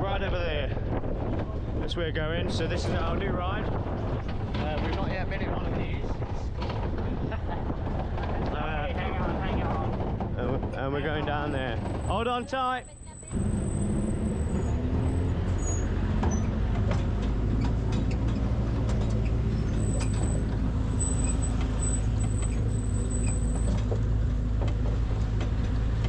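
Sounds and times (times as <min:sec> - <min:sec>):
vehicle engine running: 0:02.3 - 0:26.0
rattles and knocks: 0:02.5 - 0:12.2, 0:14.9 - 0:26.0.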